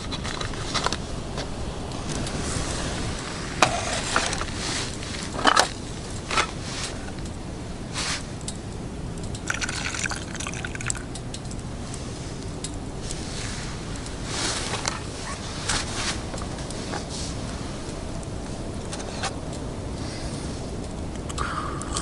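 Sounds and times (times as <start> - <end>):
steady low rumble: 0.0 - 22.0
liquid pouring: 9.4 - 11.2.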